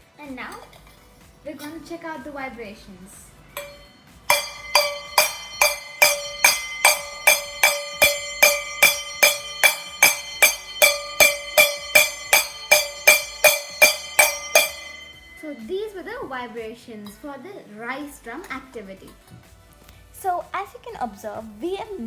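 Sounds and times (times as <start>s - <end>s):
spoon striking ringing bowl: 3.6s - 15.7s.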